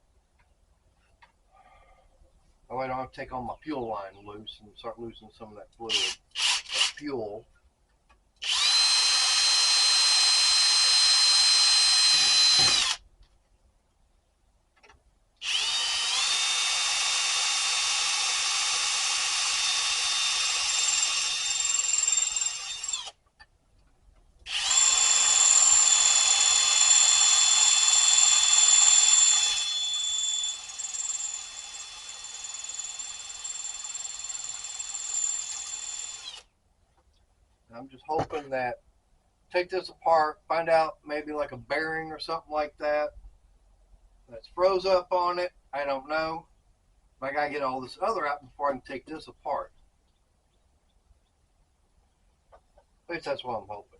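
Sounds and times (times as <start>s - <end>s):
electric drill drilling rivets: 5.9s - 7.0s, 8.4s - 13.0s, 14.8s - 23.2s, 24.5s - 36.5s.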